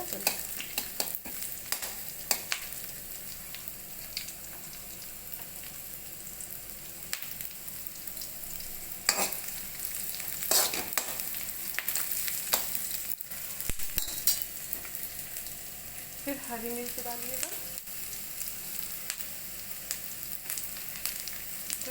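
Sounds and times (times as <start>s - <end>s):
onions sizzling in oil: 0.0s - 21.9s
spoon scraping pan: 9.0s - 9.5s, 10.4s - 11.3s.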